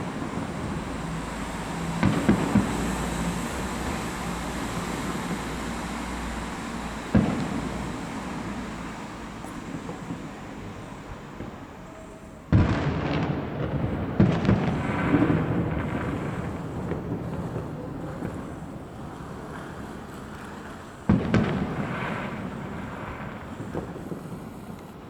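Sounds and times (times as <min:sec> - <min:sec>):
fireworks bangs: 0:00.0 - 0:25.0
rolling rumble: 0:12.5 - 0:25.0.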